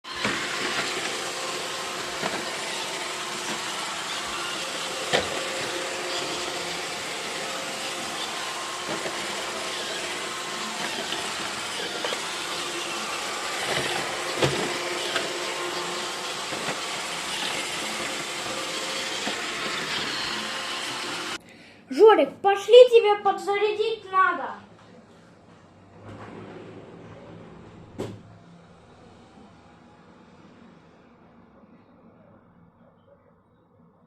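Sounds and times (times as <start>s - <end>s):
robot vacuum whirring: 0.0s - 21.4s.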